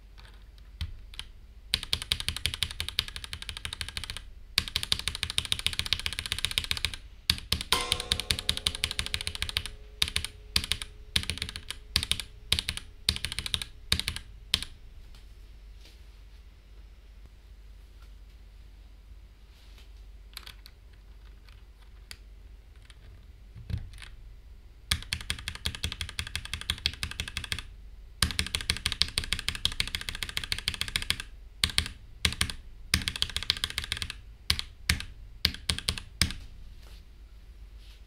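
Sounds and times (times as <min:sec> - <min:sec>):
typing on mechanical keyboard: 0:00.2 - 0:07.7, 0:09.1 - 0:14.7, 0:20.3 - 0:22.2, 0:24.9 - 0:36.4.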